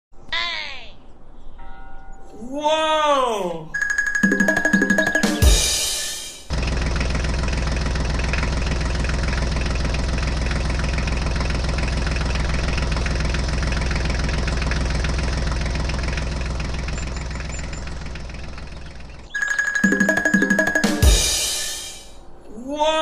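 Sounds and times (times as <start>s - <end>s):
engine idling: 6.5s - 19.4s.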